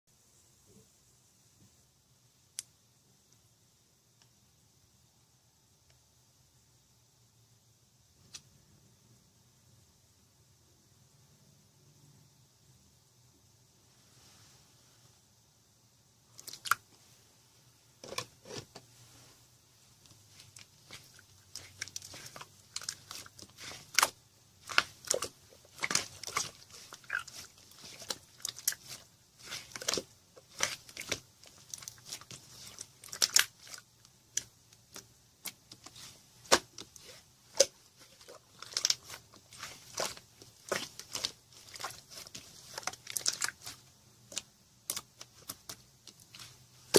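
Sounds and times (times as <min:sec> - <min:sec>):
slime squished by hand: 0:20.1 - 0:46.9.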